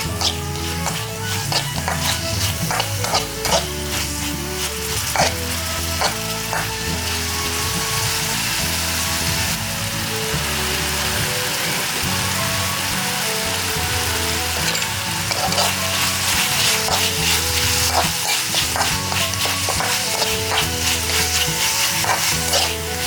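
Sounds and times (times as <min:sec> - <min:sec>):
utensil scraping pan: 0:00.0 - 0:08.6, 0:14.3 - 0:23.0
background music: 0:00.0 - 0:23.0
chicken sizzling in pan: 0:00.0 - 0:23.0.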